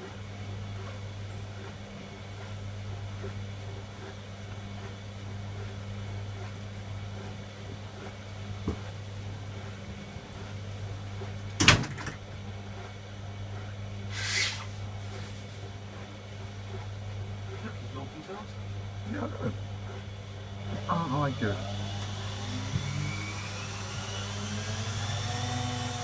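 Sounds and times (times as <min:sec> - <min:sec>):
washing machine humming: 0:00.0 - 0:26.0
short hiss: 0:14.1 - 0:14.7.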